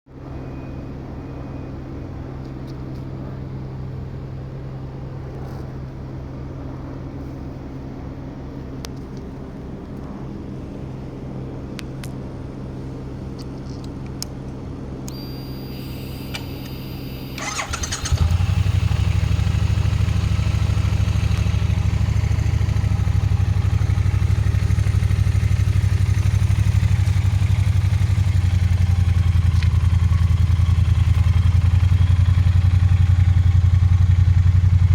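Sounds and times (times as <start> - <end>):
motorcycle engine idling: 15.3 - 34.9.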